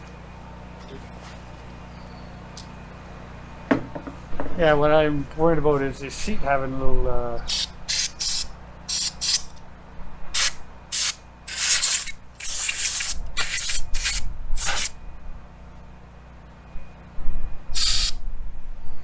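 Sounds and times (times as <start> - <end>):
aerosol can spraying: 7.5 - 9.5, 10.4 - 14.9, 17.8 - 18.2.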